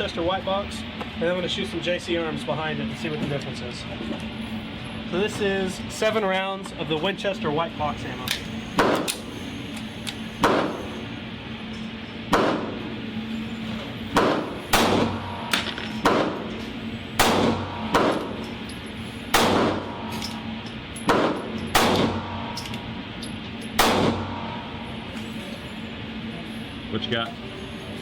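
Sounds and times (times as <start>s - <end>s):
pistol shots with echo: 8.8s - 9.1s, 10.4s - 10.7s, 12.3s - 12.8s, 14.1s - 16.5s, 17.2s - 18.4s, 19.3s - 20.2s, 21.1s - 22.6s, 23.8s - 24.6s.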